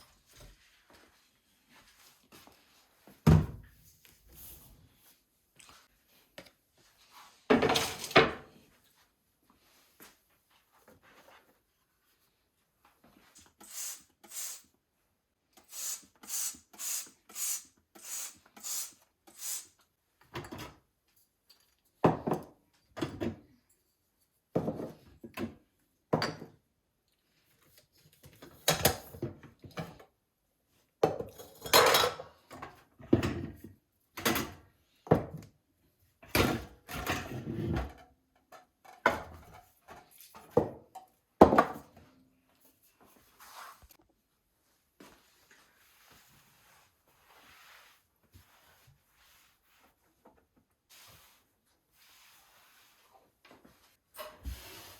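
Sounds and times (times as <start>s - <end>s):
dishes clunking and knocking: 31.0s - 33.6s.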